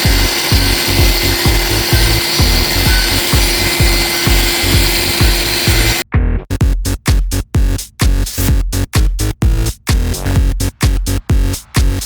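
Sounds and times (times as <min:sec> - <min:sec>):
floor grinding machine: 0:00.0 - 0:06.0
electronic music with deep beat: 0:00.0 - 0:12.0.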